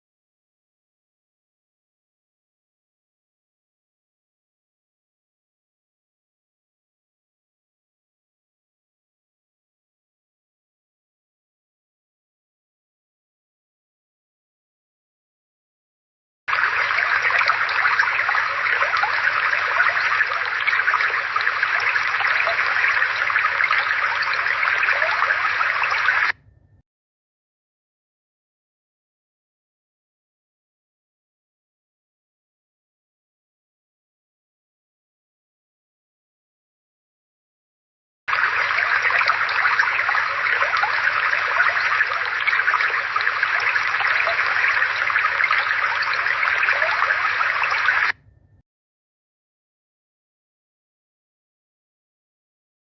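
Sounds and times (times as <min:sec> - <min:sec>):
brook babbling: 0:16.6 - 0:26.3, 0:38.3 - 0:48.1.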